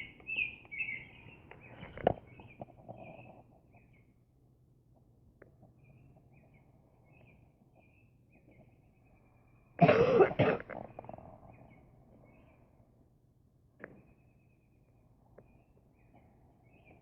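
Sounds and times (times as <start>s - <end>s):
person coughing: 9.8s - 10.8s.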